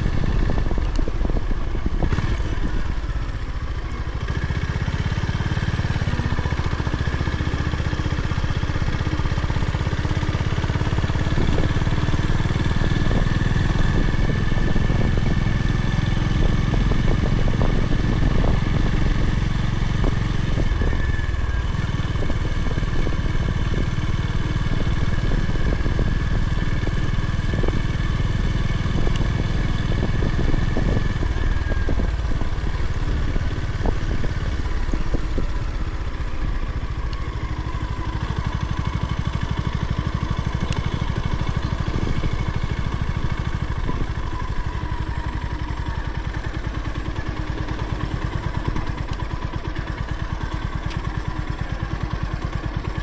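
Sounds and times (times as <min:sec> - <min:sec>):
wind noise: 0:00.0 - 0:03.3, 0:10.8 - 0:36.6
single-cylinder motorcycle engine: 0:00.0 - 0:53.0.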